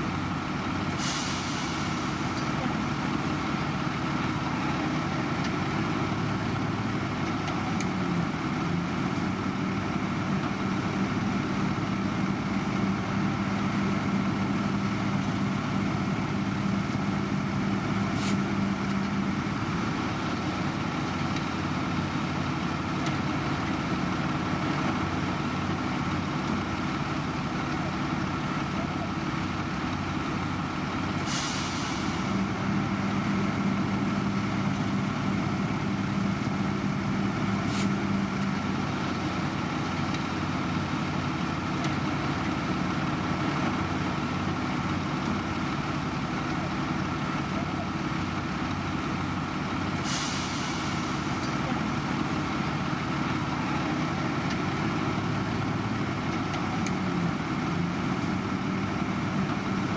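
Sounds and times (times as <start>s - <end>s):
heavy diesel engine running: 0.0s - 59.9s
short hiss of air: 1.0s - 2.2s, 31.3s - 32.2s, 50.0s - 51.4s.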